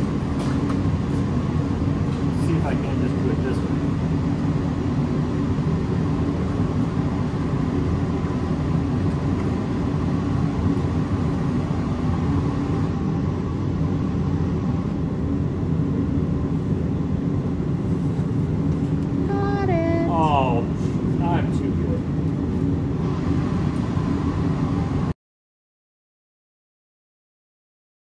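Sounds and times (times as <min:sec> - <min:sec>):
low mechanical drone: 0:00.0 - 0:25.2.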